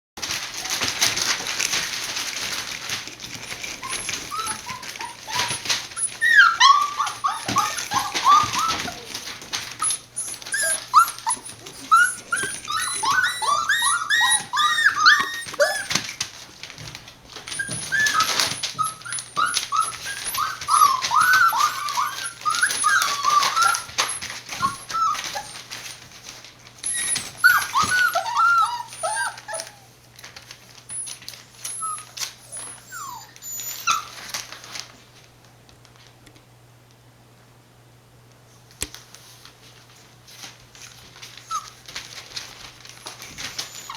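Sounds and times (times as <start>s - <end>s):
scuffles and clicks: 0.2s - 29.7s
puppies whining and whimpering: 0.3s - 1.4s, 2.4s - 16.4s, 17.0s - 30.1s, 30.8s - 34.8s, 40.8s - 43.9s.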